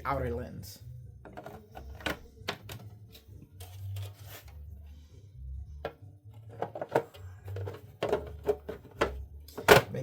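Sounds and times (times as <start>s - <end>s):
plastic parts clicking and knocking: 1.2s - 2.9s, 5.8s - 10.0s.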